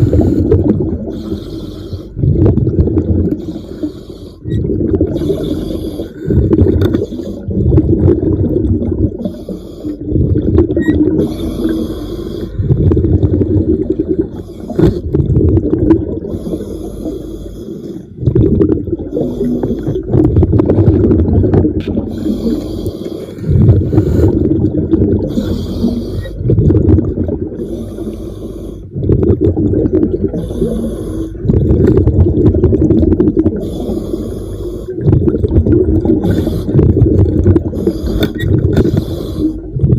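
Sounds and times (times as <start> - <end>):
rumbling bubble exhalations: 0.0 - 39.9
hissing regulator inhalations: 3.4 - 4.5, 11.2 - 12.6, 22.1 - 24.4, 25.3 - 26.4, 30.4 - 31.4, 33.6 - 35.0, 36.2 - 36.8, 37.8 - 39.7.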